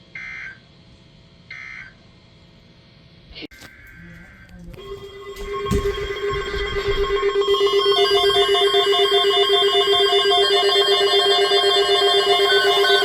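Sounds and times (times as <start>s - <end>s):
warbling electronic alarm tone: 3.7s - 13.0s
high on-off beeping tone: 4.8s - 13.0s.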